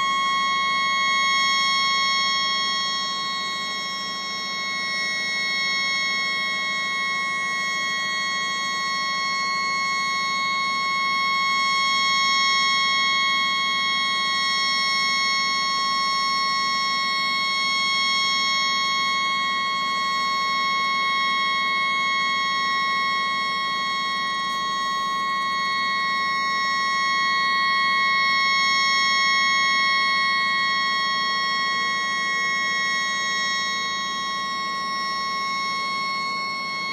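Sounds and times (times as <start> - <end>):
shrill horn tone: 0.0 - 3.9.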